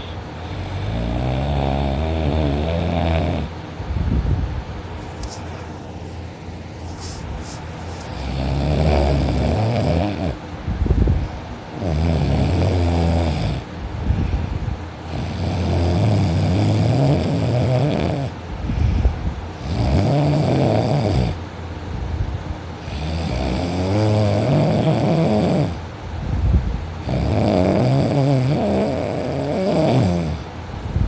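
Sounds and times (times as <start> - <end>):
person snoring heavily: 0.4 - 3.5, 7.9 - 10.4, 11.8 - 13.7, 15.1 - 18.9, 19.6 - 21.4, 22.8 - 25.8, 27.0 - 30.5.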